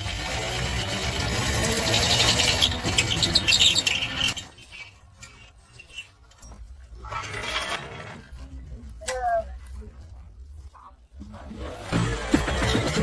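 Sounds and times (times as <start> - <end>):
electric rickshaw rattling and clicking: 0.0 - 4.5, 11.5 - 13.0.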